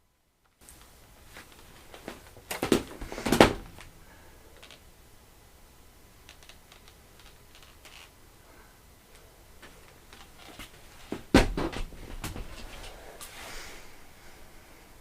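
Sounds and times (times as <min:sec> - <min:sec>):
heavier knocks: 0:02.6 - 0:03.9, 0:11.2 - 0:12.5.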